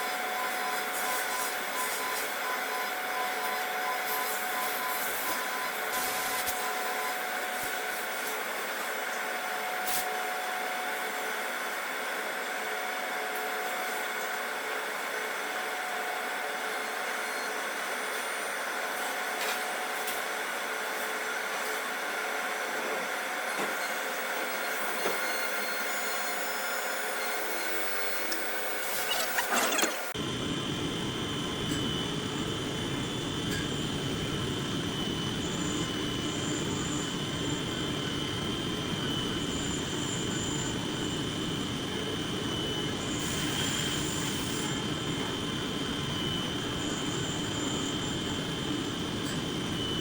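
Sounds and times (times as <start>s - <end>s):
machine tool whirring: 0.0s - 11.2s, 21.0s - 30.2s.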